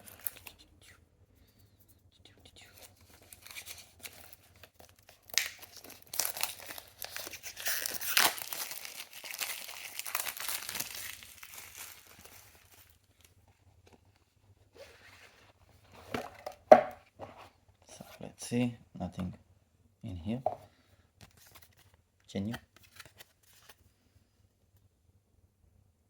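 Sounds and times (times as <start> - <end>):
packaging tearing and crinkling: 3.3 - 13.0.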